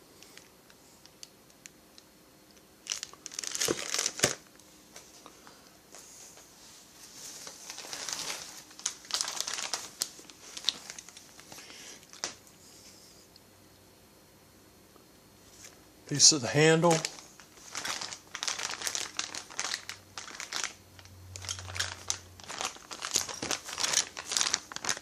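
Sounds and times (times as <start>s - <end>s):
packaging crinkling: 2.8s - 4.5s, 7.3s - 12.4s, 16.1s - 25.0s.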